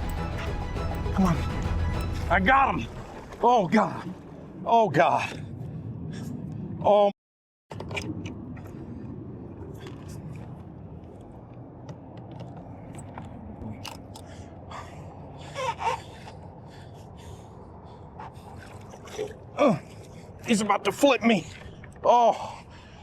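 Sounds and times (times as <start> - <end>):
man breathing hard and gasping: 14.1 - 18.7.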